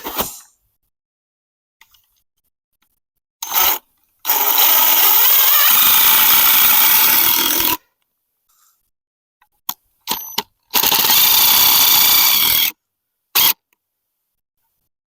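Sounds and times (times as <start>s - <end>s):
handheld power tool running: 3.4s - 7.8s, 10.1s - 12.8s, 13.4s - 13.6s.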